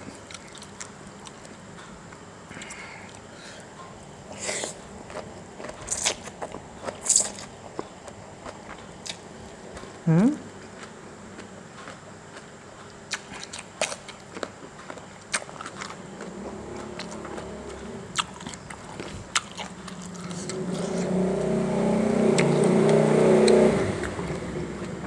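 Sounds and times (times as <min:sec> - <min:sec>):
chewing and biting food: 0:00.0 - 0:25.0
vehicle engine: 0:15.6 - 0:25.0.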